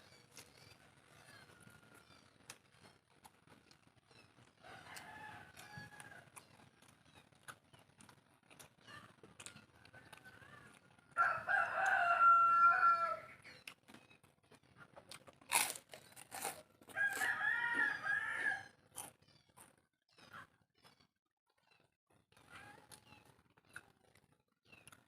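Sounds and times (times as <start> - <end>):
rooster crowing: 4.6 - 6.3, 11.1 - 13.4, 16.9 - 18.8.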